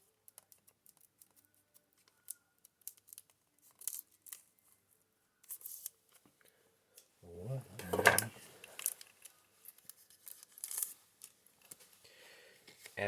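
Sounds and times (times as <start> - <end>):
packaging and cards crinkling: 7.8 - 11.9.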